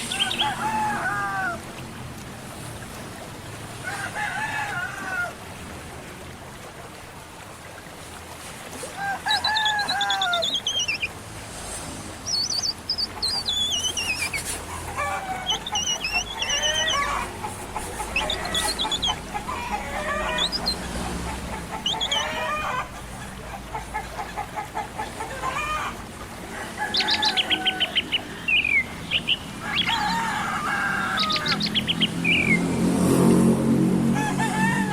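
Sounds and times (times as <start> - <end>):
birds chirping: 0.0 - 0.8, 9.4 - 11.2, 12.2 - 22.8, 26.9 - 30.3, 31.0 - 32.8
chickens calling: 0.0 - 1.6, 9.0 - 11.1, 12.3 - 32.8.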